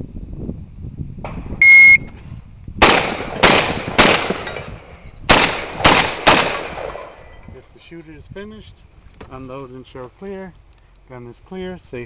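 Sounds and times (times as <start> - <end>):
shot timer beep: 1.6 - 2.1.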